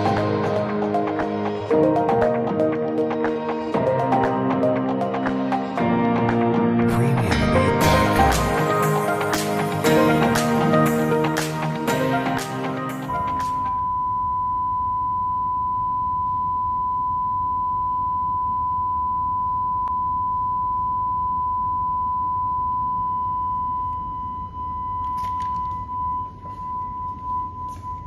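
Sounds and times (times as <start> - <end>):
steady sine test tone: 13.2 - 28.0.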